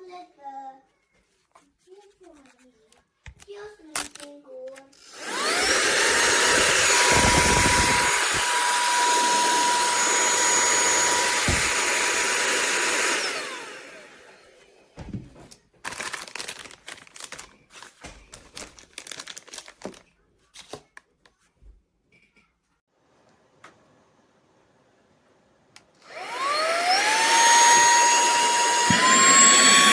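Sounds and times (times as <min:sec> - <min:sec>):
handheld vacuum motor whine: 0:05.0 - 0:14.9, 0:26.0 - 0:29.9.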